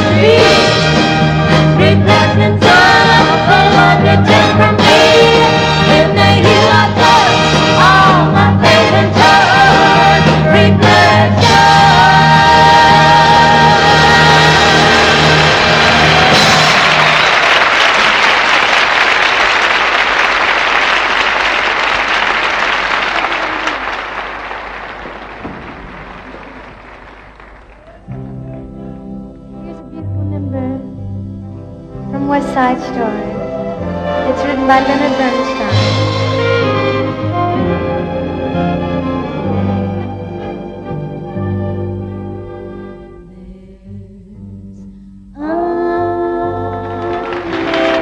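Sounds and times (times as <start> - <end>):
live band and singers: 0.0 - 17.5
audience applauding: 13.8 - 28.7, 46.8 - 48.0.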